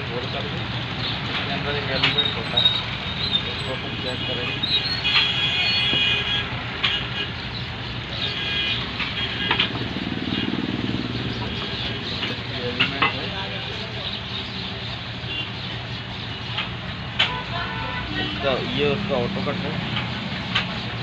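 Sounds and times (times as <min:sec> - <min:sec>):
traffic noise: 0:00.0 - 0:21.0.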